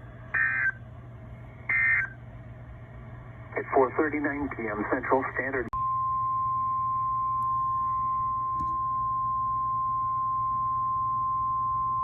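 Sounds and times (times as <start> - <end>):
low constant hum: 0.0 - 12.0
steady alarm beep: 0.4 - 0.8, 1.7 - 2.2.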